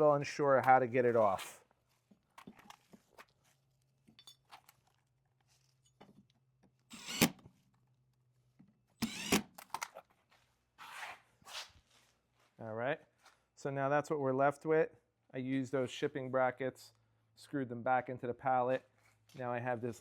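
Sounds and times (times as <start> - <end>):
metal brackets and screws clattering: 4.1 - 4.8
power drill driving screws: 6.9 - 7.4, 9.0 - 9.9.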